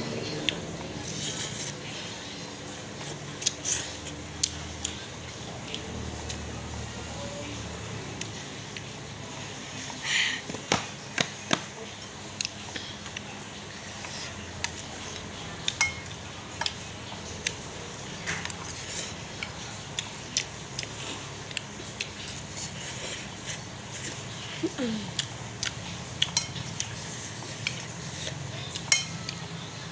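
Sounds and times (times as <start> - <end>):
cutlery clinking against a bowl: 15.6 - 16.8, 26.2 - 29.4.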